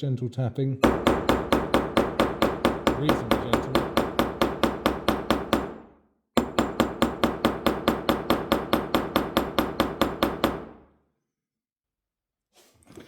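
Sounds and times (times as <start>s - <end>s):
hammer tapping rivets: 0.8s - 5.8s, 6.4s - 10.8s.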